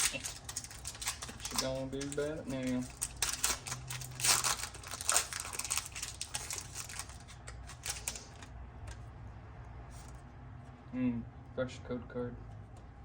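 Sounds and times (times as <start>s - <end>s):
foil wrapper crinkling: 0.0s - 8.5s.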